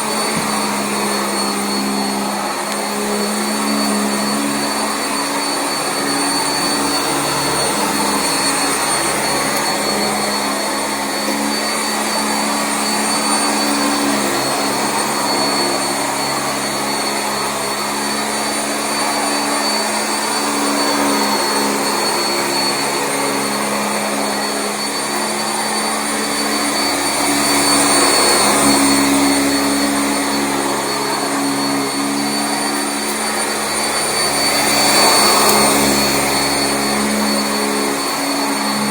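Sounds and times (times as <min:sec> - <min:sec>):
upright vacuum running on carpet: 0:00.0 - 0:38.9.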